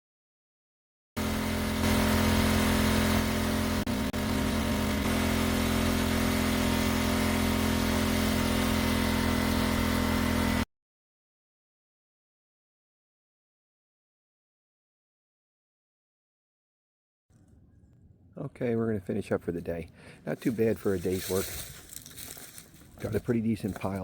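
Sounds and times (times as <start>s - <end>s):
small gasoline engine running: 1.2s - 10.7s.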